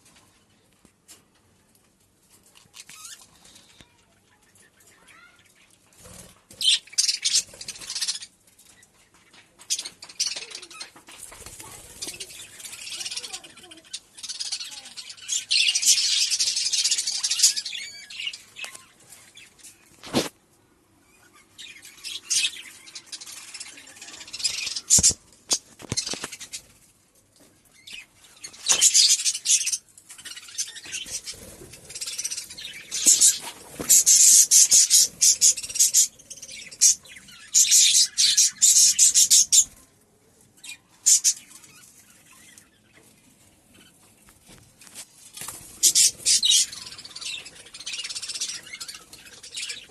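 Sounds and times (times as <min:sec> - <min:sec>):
budgerigars chattering and chirping: 0:06.1 - 0:08.3, 0:11.6 - 0:19.6, 0:21.1 - 0:26.6, 0:27.8 - 0:39.8, 0:40.6 - 0:43.0, 0:45.5 - 0:49.9.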